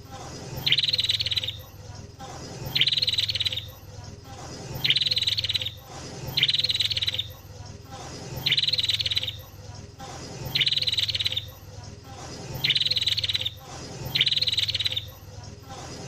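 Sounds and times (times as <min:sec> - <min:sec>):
songbird trilling: 0:00.5 - 0:01.8, 0:02.6 - 0:03.9, 0:04.7 - 0:07.4, 0:08.3 - 0:09.5, 0:10.4 - 0:11.6, 0:12.5 - 0:15.2.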